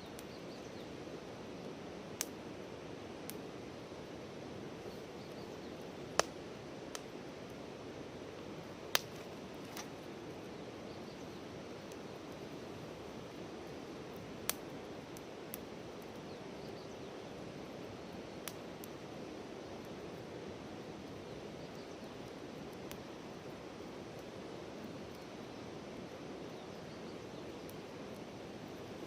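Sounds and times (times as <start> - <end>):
campfire crackling and popping: 0.0 - 29.0
low steady hiss: 0.0 - 29.0.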